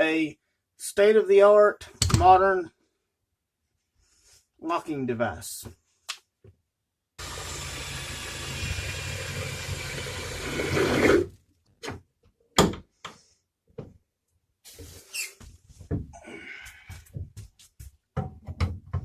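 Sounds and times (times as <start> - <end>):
electric drill boring through steel: 7.2 - 11.3.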